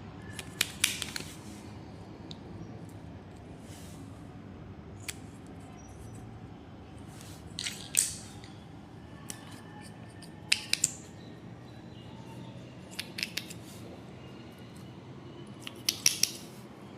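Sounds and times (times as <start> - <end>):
sharp snaps: 0.3 - 1.3, 10.5 - 11.1, 12.9 - 13.6, 15.6 - 16.5.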